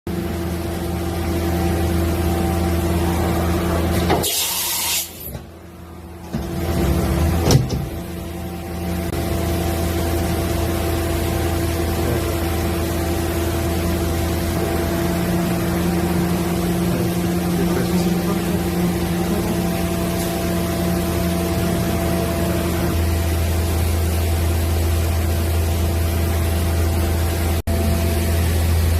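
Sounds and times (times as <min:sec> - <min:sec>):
machine humming from pumps and fans: 0:00.1 - 0:28.9
short loud air hiss: 0:04.2 - 0:05.3.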